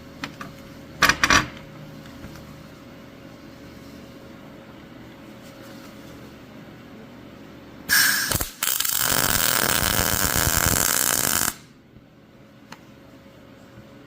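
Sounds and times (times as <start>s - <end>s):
arc welding crackling: 7.9s - 11.7s.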